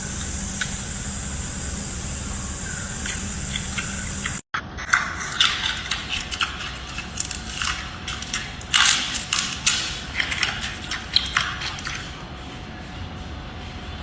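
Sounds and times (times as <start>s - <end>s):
panda crunching food: 4.8s - 13.0s.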